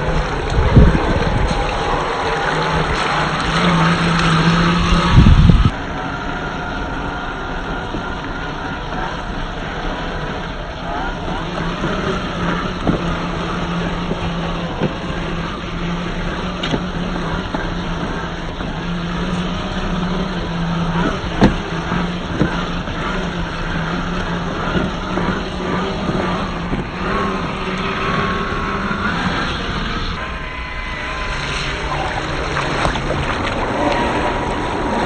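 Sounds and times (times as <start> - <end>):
electric motor whining: 0.0 - 35.0.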